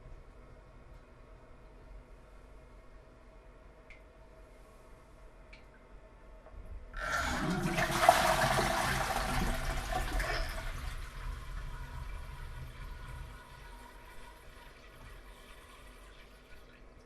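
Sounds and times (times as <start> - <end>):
toilet flushing: 7.0 - 17.0.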